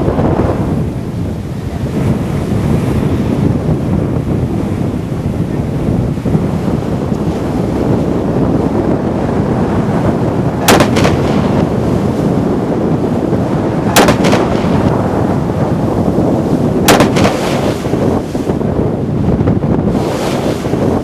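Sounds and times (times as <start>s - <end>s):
wind and sea noise: 0.0s - 21.0s
loud sharp bang: 10.6s - 11.4s, 13.9s - 14.7s, 16.8s - 17.6s.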